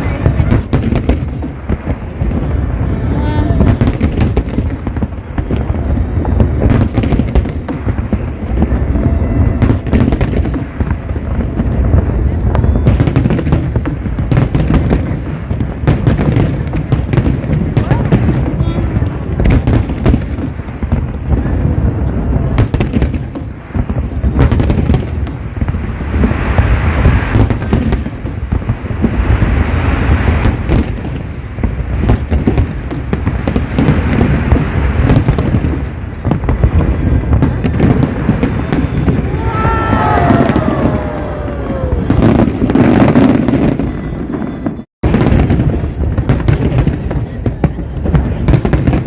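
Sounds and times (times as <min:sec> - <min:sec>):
deep rumble: 0:00.0 - 0:14.5
fireworks booms and bangs: 0:00.0 - 0:49.0
fireworks crackling hiss: 0:00.0 - 0:49.0.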